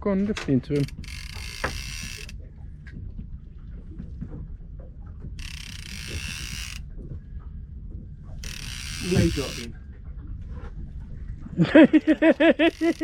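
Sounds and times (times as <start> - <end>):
steady low rumble: 0.0 - 8.8, 9.7 - 12.7
fishing reel ratcheting: 0.8 - 2.4, 5.4 - 6.9, 8.4 - 9.7, 12.7 - 13.0.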